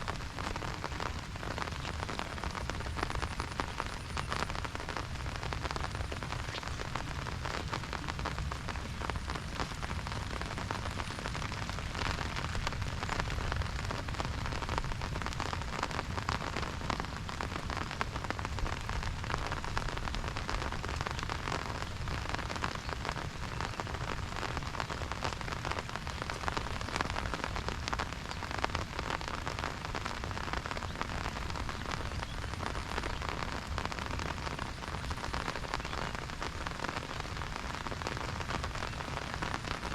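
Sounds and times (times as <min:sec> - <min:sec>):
rain on an umbrella: 0:00.0 - 0:39.9.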